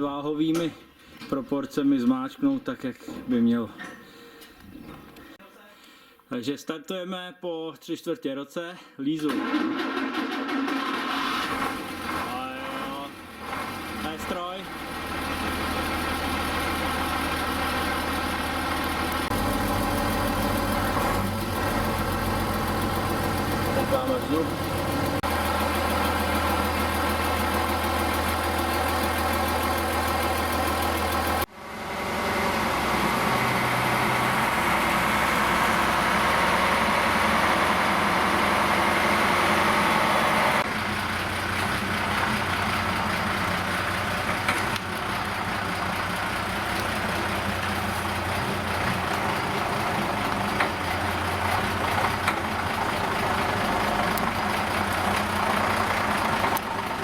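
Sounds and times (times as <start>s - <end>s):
machine engine idling: 11.7s - 57.0s.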